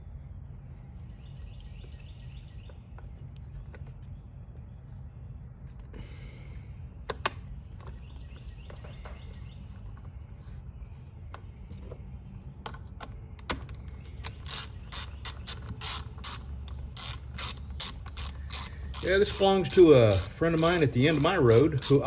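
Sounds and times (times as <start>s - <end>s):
hand tool clicking: 14.2s - 22.0s.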